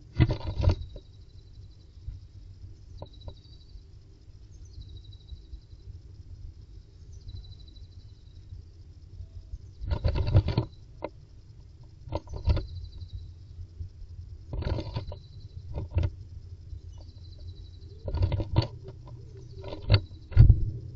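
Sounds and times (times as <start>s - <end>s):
bird scratching in nest box: 0.0s - 1.0s, 9.8s - 10.8s, 12.1s - 12.9s, 14.5s - 16.2s, 18.0s - 20.6s.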